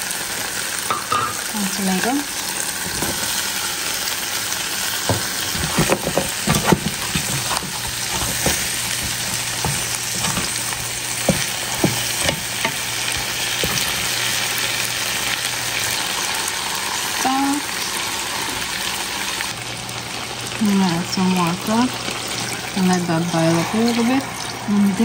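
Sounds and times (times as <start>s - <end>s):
food sizzling in a pot: 0.0s - 25.0s
spoon knocking against pot: 0.9s - 1.4s, 5.1s - 10.5s, 11.2s - 14.0s.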